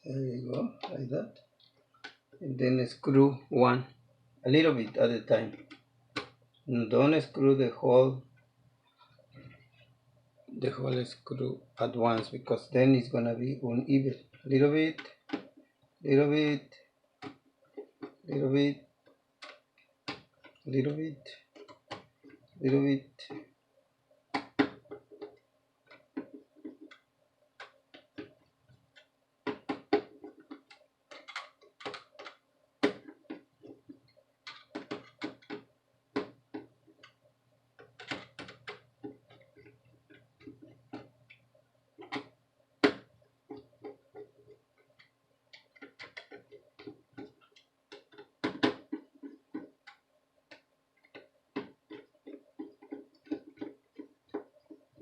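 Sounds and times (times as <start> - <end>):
faint steady hum: 0.0 - 55.0
screwdriver clicks and taps on metal: 24.3 - 27.0, 27.6 - 37.2, 37.8 - 41.4, 42.0 - 54.8.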